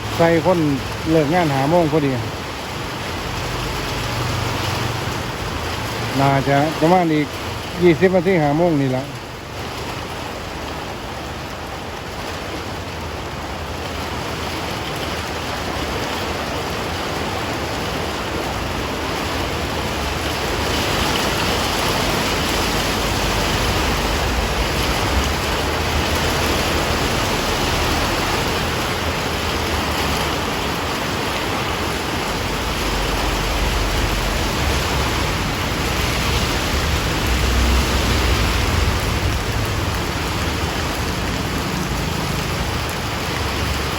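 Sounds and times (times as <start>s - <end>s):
heavy rain pouring: 0.0s - 43.9s
low rumble: 23.0s - 27.6s.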